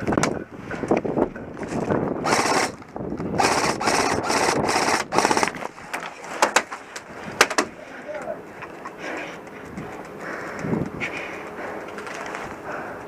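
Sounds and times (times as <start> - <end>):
airsoft gun full-auto bursts: 2.2 - 2.8, 3.4 - 5.6.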